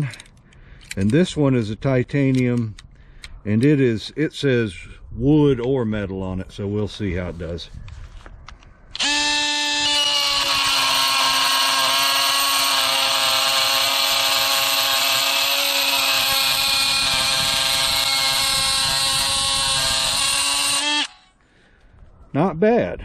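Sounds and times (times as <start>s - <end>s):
oscillating tool cutting steel: 9.0s - 21.3s.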